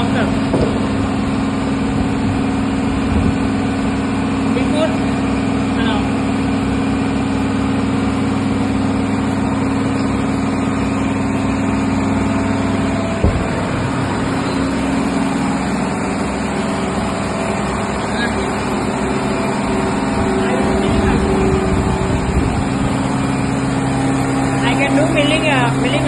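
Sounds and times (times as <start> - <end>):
machine tool humming: 0.0 - 26.0
short mechanical knock: 13.2 - 15.0.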